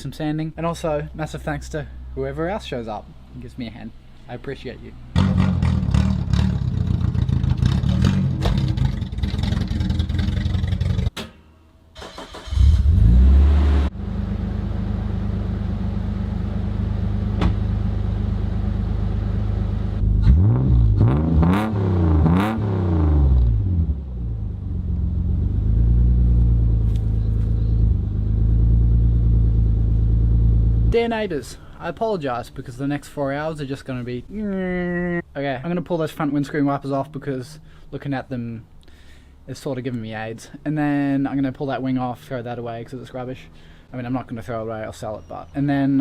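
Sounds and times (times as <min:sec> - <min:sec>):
car engine revving and idling: 0:05.0 - 0:11.1, 0:12.4 - 0:31.0.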